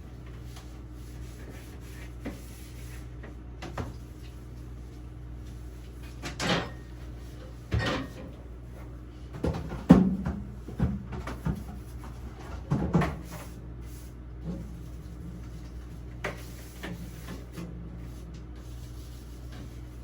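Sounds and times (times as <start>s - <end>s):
refrigerator shelves and door knocking: 9.4s - 11.7s.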